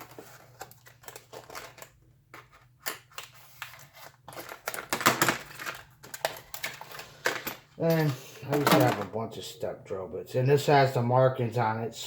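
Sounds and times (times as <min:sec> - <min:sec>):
packaging crackling and scraping: 0:00.0 - 0:09.1.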